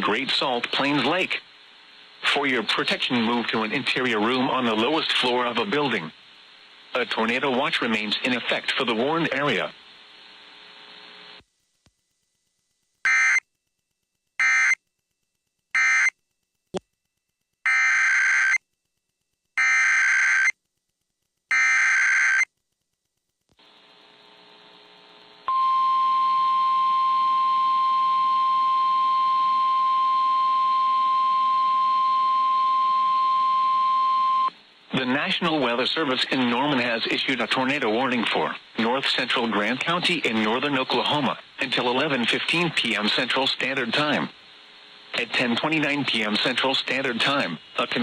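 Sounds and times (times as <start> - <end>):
steady attention tone: 25.4 - 34.5.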